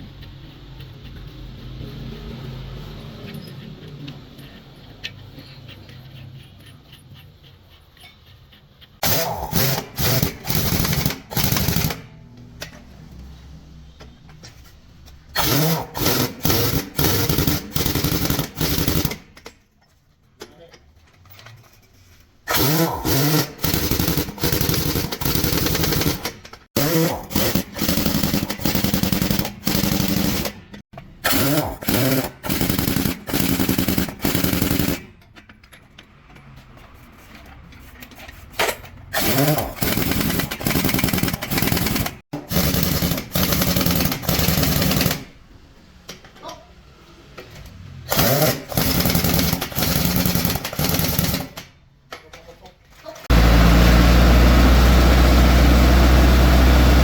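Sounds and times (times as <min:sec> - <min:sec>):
pneumatic impact wrench hammering: 0:09.0 - 0:12.8, 0:15.3 - 0:19.6, 0:22.4 - 0:35.6, 0:38.5 - 0:45.4, 0:48.1 - 0:51.8.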